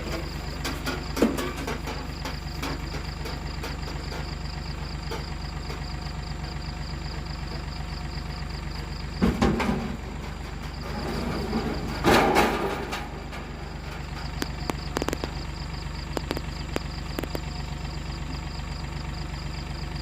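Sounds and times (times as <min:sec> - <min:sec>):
engine idling: 0:00.0 - 0:20.0
loud clatter: 0:09.1 - 0:17.4.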